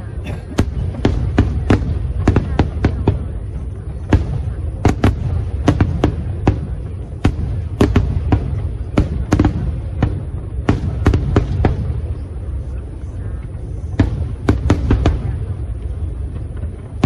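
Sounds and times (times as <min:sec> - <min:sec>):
continuous low rumble: 0:00.0 - 0:17.0
fireworks bangs: 0:00.0 - 0:17.0.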